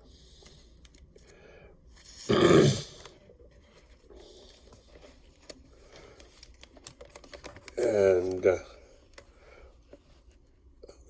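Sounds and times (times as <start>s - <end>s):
person grunting: 2.3s - 3.0s.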